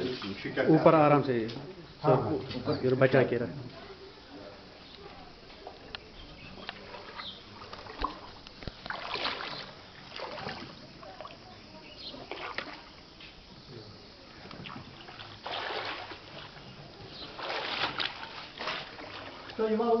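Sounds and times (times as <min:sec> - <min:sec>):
feet splashing through water: 0:05.6 - 0:13.5, 0:14.5 - 0:20.0.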